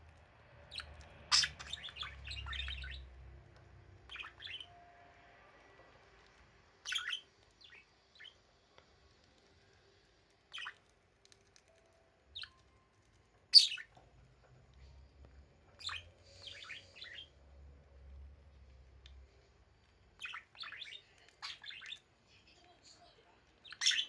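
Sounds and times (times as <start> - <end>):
budgerigars chirping: 0.7 - 3.2, 4.0 - 4.7, 6.8 - 8.4, 13.5 - 13.9, 15.8 - 17.3, 20.2 - 22.0, 23.6 - 24.0.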